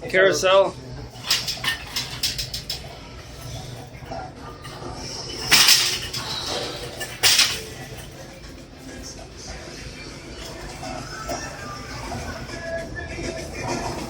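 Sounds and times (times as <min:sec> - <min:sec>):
milking machinery humming: 0:00.0 - 0:14.0.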